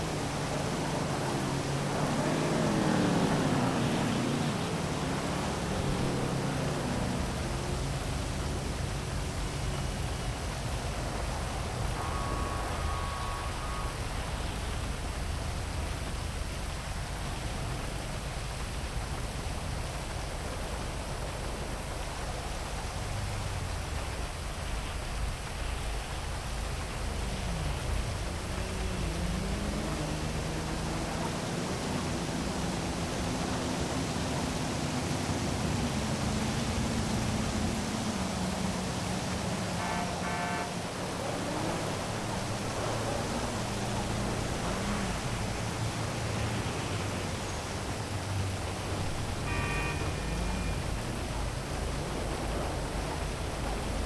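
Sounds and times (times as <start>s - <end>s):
heavy rain hissing: 0.0s - 54.0s
low traffic rumble: 0.0s - 54.0s
low gliding drone: 26.0s - 54.0s.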